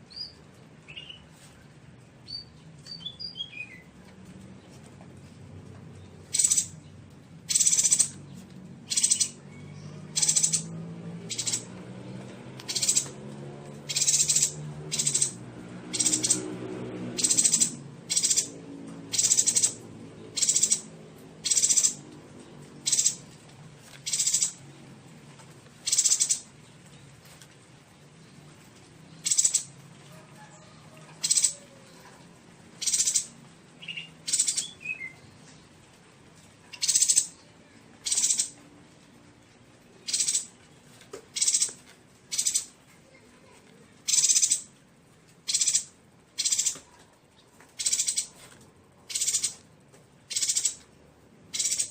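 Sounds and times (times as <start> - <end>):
bird chirping: 0.0 - 1.3, 2.2 - 3.9, 5.9 - 11.8, 12.6 - 24.8, 25.8 - 27.4, 28.2 - 29.8, 30.6 - 31.7, 32.7 - 35.8, 36.4 - 38.6, 40.0 - 44.8, 45.4 - 48.5, 49.1 - 49.6, 50.3 - 50.9, 51.5 - 51.9.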